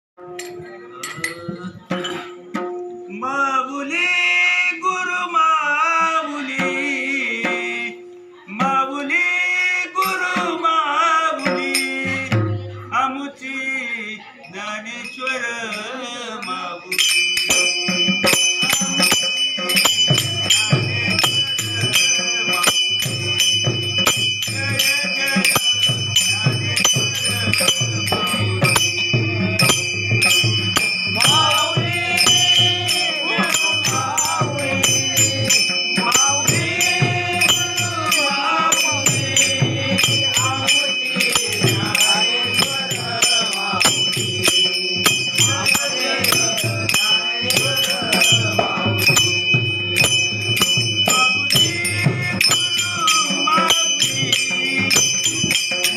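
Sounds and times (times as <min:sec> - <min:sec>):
hand cymbals ringing: 0:00.2 - 0:03.3, 0:11.3 - 0:12.9, 0:14.4 - 0:55.9
people singing: 0:00.4 - 0:55.9
low drum beat: 0:19.8 - 0:55.4.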